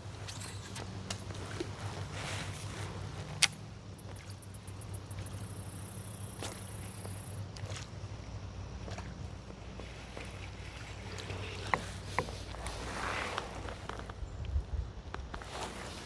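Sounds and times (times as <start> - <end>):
fishing line hissing out: 0.0 - 1.1.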